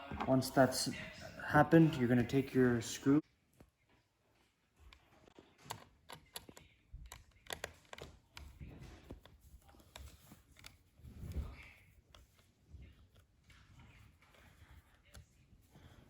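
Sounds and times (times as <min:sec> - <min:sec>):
screwdriver clicks and taps: 0:05.6 - 0:09.3.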